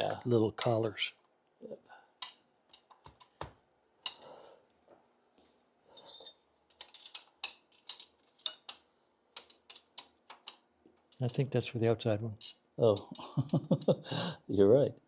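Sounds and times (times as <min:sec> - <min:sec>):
metal parts clinking: 0:06.0 - 0:08.8.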